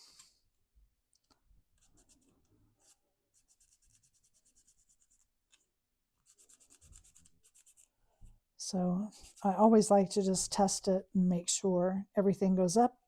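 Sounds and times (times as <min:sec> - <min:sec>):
scratchy rubbing of paper: 0:01.8 - 0:08.0, 0:09.1 - 0:09.7.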